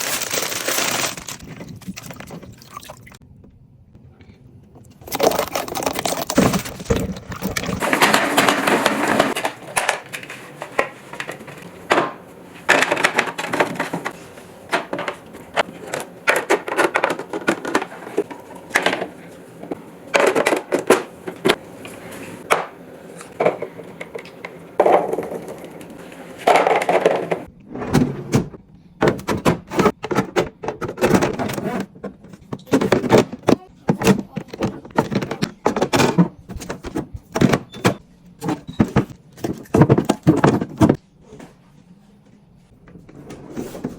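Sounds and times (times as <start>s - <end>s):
rustling or rinsing: 4.8s - 11.7s
kitchen knocks and clatter: 6.0s - 21.6s, 22.4s - 41.0s.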